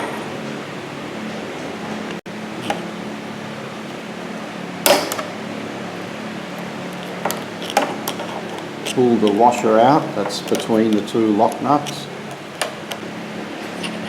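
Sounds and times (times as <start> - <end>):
steady background hum: 0.0 - 14.0
loud ringing metal clank: 4.8 - 5.5.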